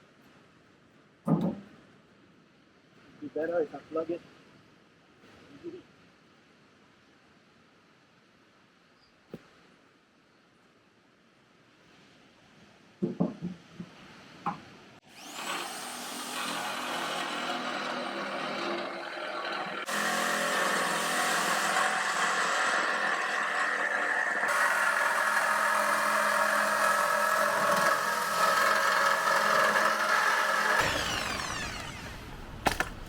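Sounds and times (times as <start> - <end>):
power tool cutting steel sheet: 15.0 - 33.0.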